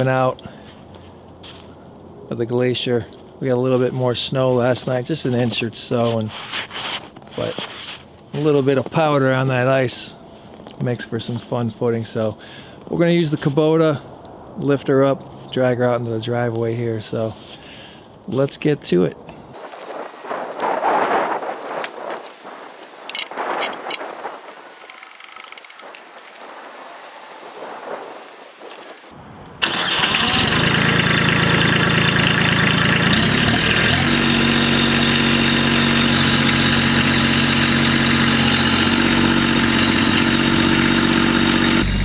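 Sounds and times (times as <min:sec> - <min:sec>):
diesel tractor engine running: 0:29.6 - 0:42.0.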